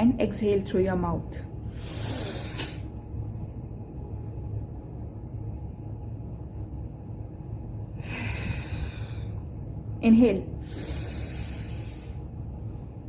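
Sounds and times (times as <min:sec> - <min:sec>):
steady low hum: 0:00.0 - 0:13.0
deep breath through nose: 0:01.7 - 0:02.9, 0:08.0 - 0:09.4, 0:10.6 - 0:12.2.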